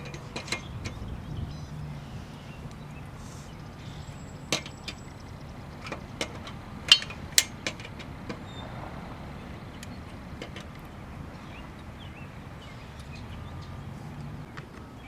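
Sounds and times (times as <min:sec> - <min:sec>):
lug wrench metal clinks: 0:05.8 - 0:08.2.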